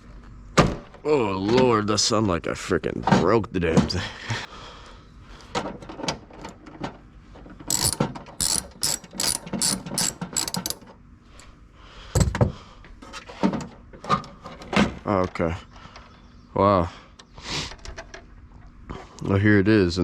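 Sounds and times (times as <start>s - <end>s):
ratchet wrench clicking: 7.7s - 10.9s.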